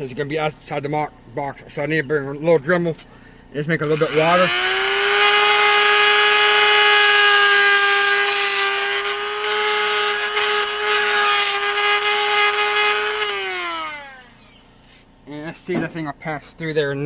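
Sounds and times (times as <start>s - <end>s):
rotary tool grinding whine: 3.8s - 15.0s.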